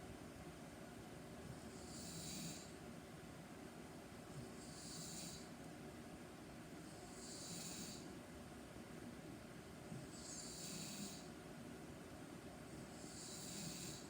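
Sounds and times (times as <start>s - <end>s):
woman snoring: 13.0s - 14.0s.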